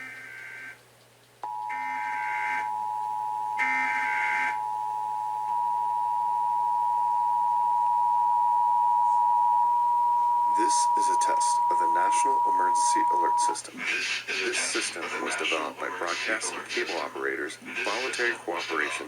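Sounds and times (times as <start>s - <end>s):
two-tone attention signal: 1.4s - 13.6s
harsh digital screeches: 1.7s - 2.8s, 3.6s - 4.6s.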